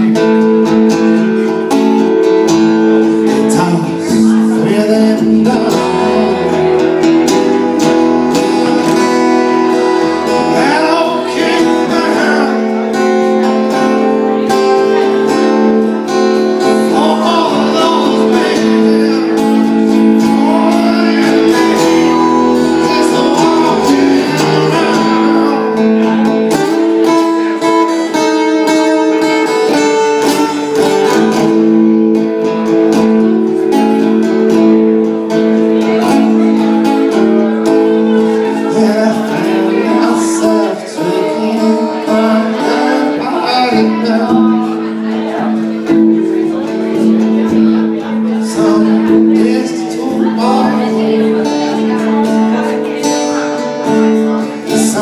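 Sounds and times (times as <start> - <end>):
acoustic guitar playing: 0.0 - 55.0
man singing: 0.0 - 55.0.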